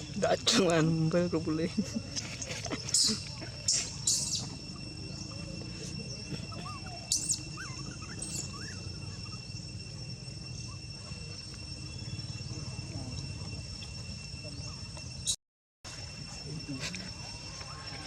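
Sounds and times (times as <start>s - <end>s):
insect drone: 0.0s - 18.0s
animal chirps and squeaks: 2.2s - 12.4s
sharp animal calls: 6.5s - 9.7s.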